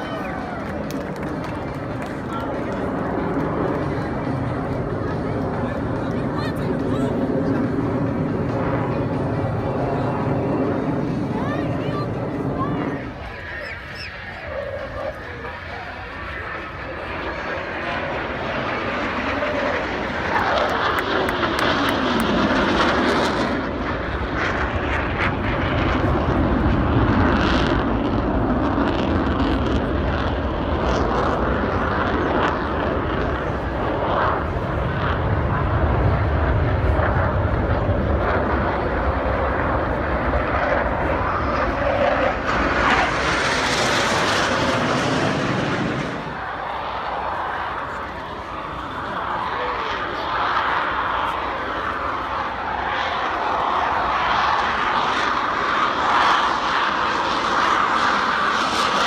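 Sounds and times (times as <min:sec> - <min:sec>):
jets flying past: 0:00.0 - 0:59.0.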